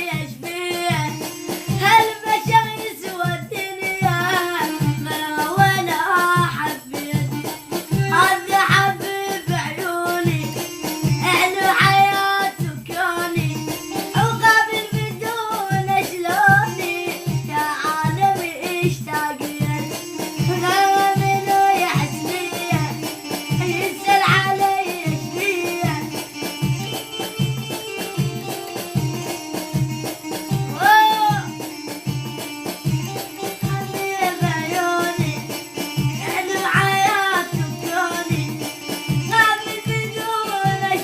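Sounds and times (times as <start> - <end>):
child singing a chant: 0.0 - 1.2, 1.8 - 7.3, 8.0 - 10.5, 11.2 - 19.9, 20.5 - 23.0, 23.6 - 26.2, 33.6 - 35.4, 36.2 - 38.5, 39.3 - 41.0
low drum beat: 13.4 - 41.0.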